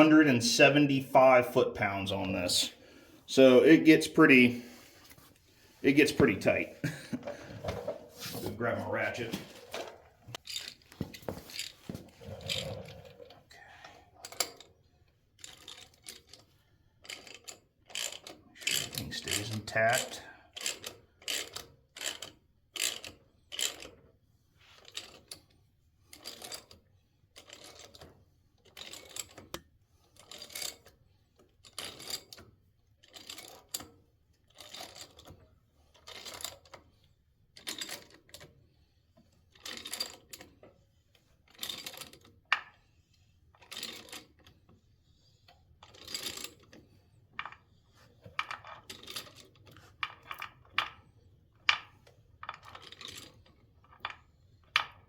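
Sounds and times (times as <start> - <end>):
hand ratchet clicking: 17.0 - 23.9.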